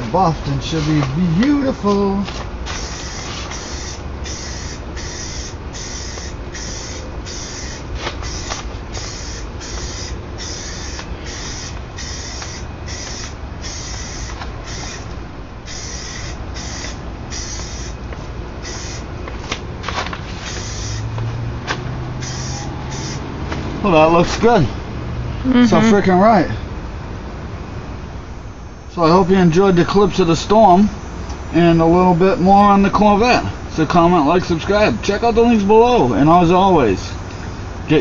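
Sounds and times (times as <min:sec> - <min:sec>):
spray can hissing: 0:02.6 - 0:15.0, 0:15.7 - 0:18.0, 0:18.6 - 0:19.1, 0:19.9 - 0:21.2, 0:22.2 - 0:23.3.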